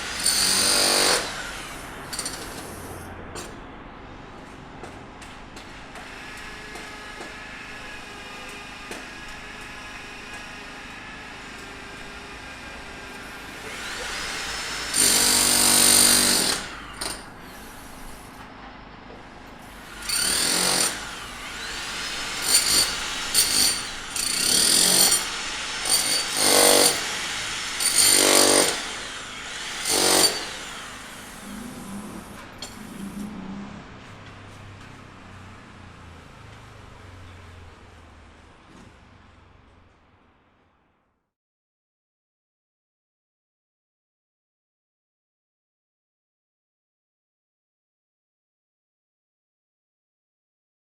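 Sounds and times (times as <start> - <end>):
power tool whining: 6.1 - 18.4, 19.6 - 33.4.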